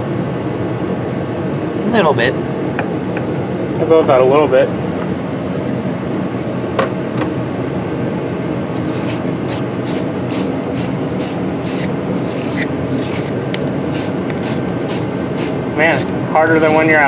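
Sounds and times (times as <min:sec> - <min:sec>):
steady hum: 0:00.0 - 0:17.0
wire brush scrubbing metal: 0:08.8 - 0:17.0.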